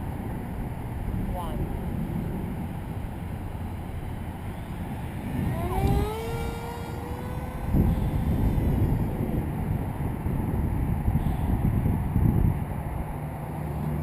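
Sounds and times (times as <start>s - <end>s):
wind buffeting microphone: 0.0s - 14.0s
rc plane motor whine: 4.6s - 10.5s.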